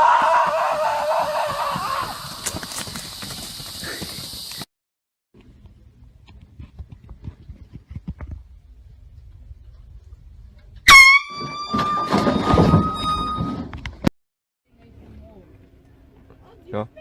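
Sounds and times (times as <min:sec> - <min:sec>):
air horn blast: 0:10.9 - 0:12.0.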